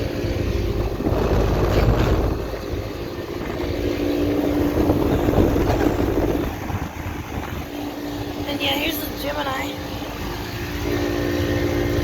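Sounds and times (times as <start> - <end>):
compressor humming: 0.0 - 12.0
condenser fan rushing: 0.0 - 12.0.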